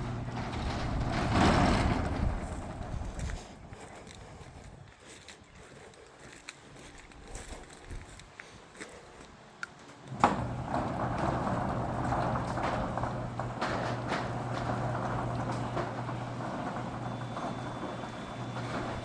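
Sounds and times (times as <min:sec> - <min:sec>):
rattling door drive: 0:00.0 - 0:03.5, 0:10.2 - 0:19.0
garage door opener humming: 0:00.0 - 0:03.7, 0:10.1 - 0:19.0.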